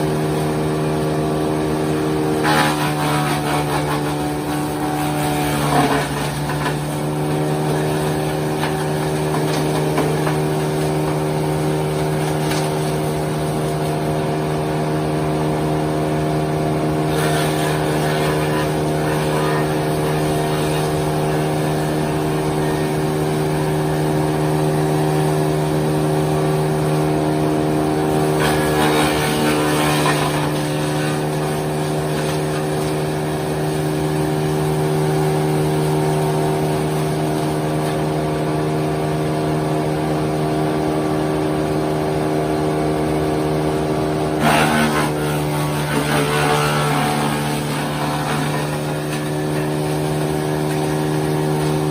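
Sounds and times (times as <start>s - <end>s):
wood chipper engine running: 0.0s - 51.9s.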